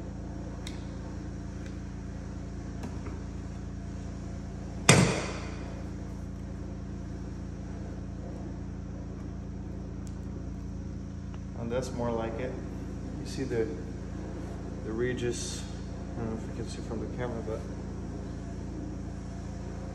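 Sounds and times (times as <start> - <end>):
steady low hum: 0.0 - 19.9
loud knock of hard object: 4.9 - 5.5.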